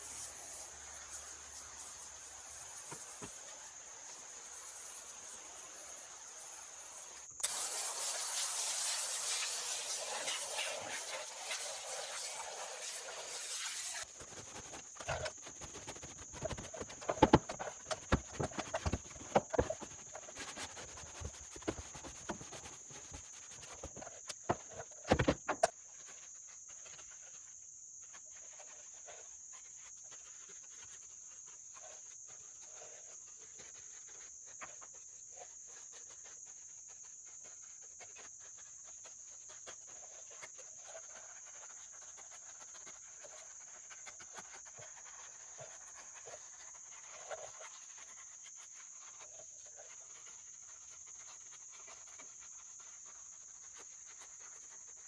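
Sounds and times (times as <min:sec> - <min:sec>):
spray hissing: 0:00.0 - 0:25.6
crickets trilling: 0:00.0 - 0:27.6
scrubbing and knocking on wheel: 0:14.0 - 0:25.7.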